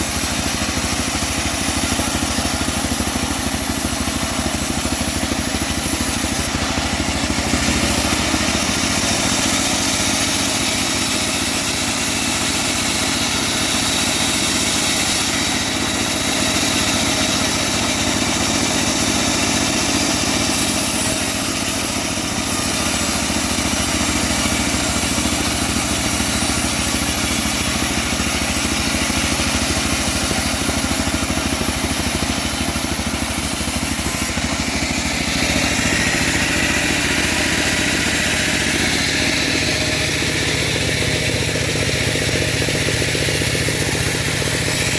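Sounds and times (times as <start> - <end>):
bandsaw sawmill running: 0.0 - 44.9.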